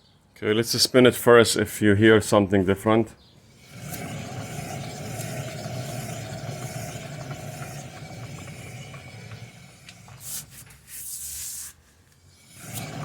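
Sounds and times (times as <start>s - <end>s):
wheel bearing humming: 3.4s - 11.1s, 12.1s - 13.0s
loud rushing scrapes: 3.5s - 11.8s, 12.4s - 13.0s.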